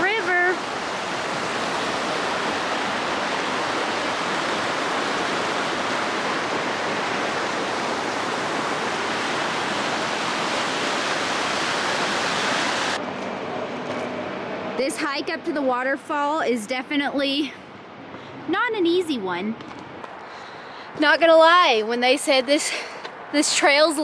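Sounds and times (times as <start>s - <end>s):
river water rushing: 0.0s - 13.0s.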